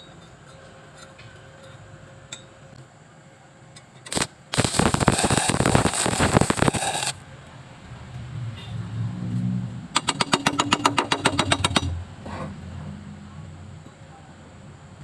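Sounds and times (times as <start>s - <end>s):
welding arc crackling: 4.1s - 7.2s
electrode strike burst: 4.2s - 7.2s.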